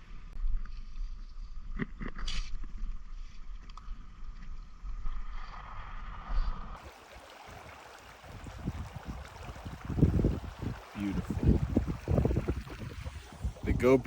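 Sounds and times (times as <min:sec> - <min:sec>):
creek water rushing: 0:06.8 - 0:14.0
wind rumble on microphone: 0:07.5 - 0:14.0.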